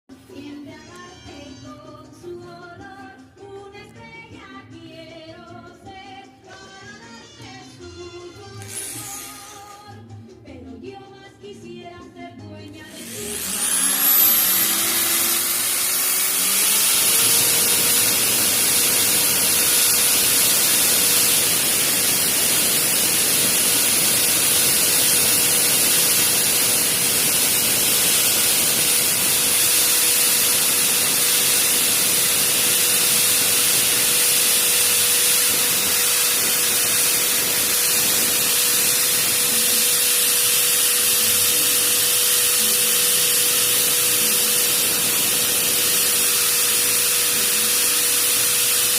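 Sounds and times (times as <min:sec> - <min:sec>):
electric drill whining: 0:08.5 - 0:10.0, 0:12.8 - 0:48.9
hiss: 0:17.2 - 0:40.1.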